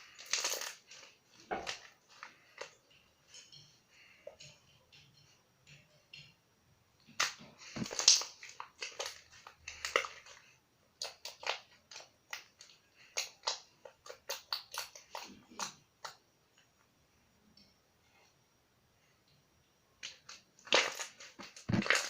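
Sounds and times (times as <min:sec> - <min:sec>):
slime popping and crackling: 0:00.0 - 0:02.8, 0:07.1 - 0:10.4, 0:11.0 - 0:16.2, 0:20.0 - 0:22.0.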